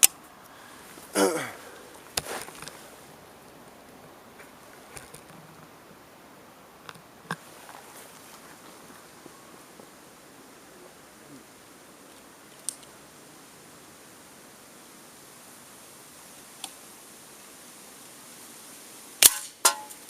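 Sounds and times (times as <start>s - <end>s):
faint ticks: 11.6s - 13.0s, 16.3s - 16.9s.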